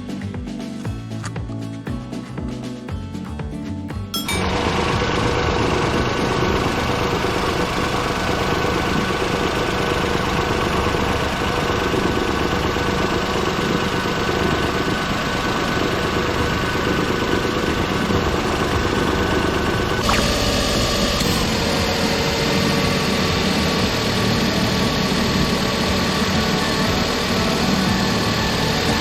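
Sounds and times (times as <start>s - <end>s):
car engine idling: 4.4s - 29.0s.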